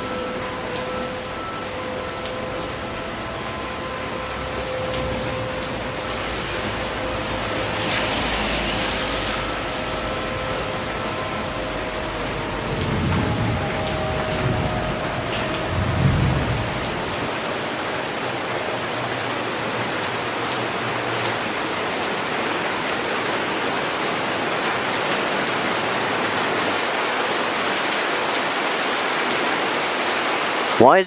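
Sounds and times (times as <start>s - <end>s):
faint warning siren: 0.0s - 30.8s
heavy rain: 0.0s - 31.0s
low rumble of thunder: 10.4s - 17.4s.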